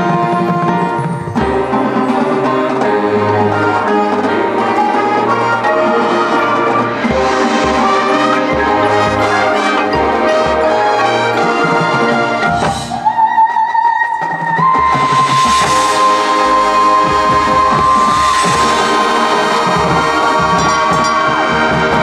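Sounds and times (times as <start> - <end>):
marching band playing: 0.0 - 13.6, 14.2 - 22.0.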